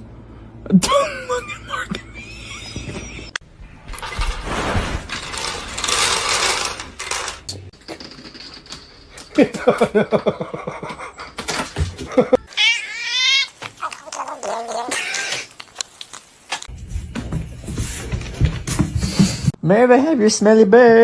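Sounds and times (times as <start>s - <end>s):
cat meowing: 12.5s - 15.5s.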